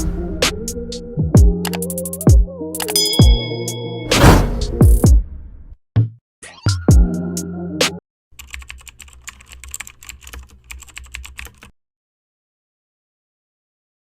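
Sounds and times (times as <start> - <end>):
keyboard typing clicks: 1.6 - 2.2, 2.8 - 3.2, 8.4 - 11.7.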